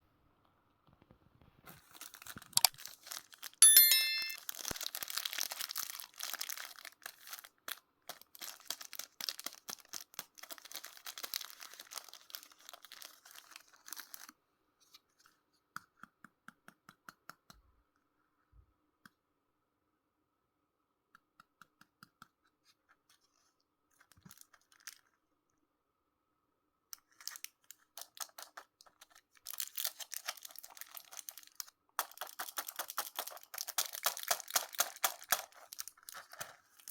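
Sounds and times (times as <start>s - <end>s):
sweet wrappers crinkling: 1.7s - 14.4s, 24.0s - 25.2s, 27.0s - 36.9s
short bright ring: 3.6s - 4.4s.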